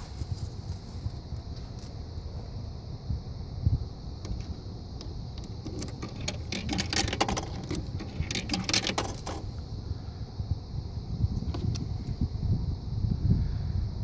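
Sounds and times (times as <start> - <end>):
small metal objects jingling: 0.0 - 2.0, 5.7 - 9.6
low steady rumble: 0.0 - 14.0.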